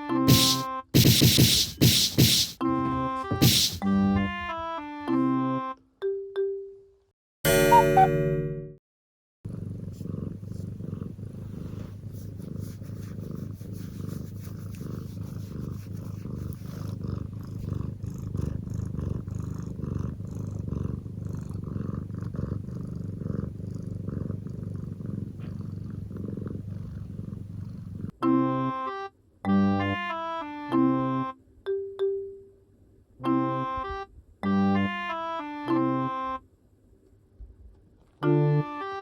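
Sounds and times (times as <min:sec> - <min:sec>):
short musical jingle: 0:07.5 - 0:08.8
cat purring: 0:09.5 - 0:28.2.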